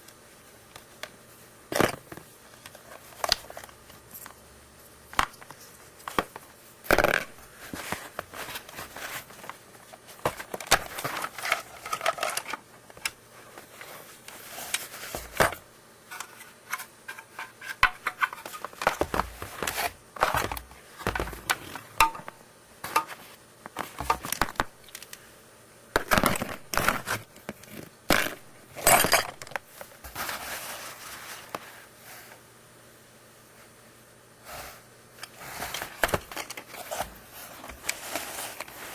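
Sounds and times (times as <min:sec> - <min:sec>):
plastic parts clicking and rattling: 0:05.1 - 0:13.2, 0:26.0 - 0:29.6, 0:35.2 - 0:38.8.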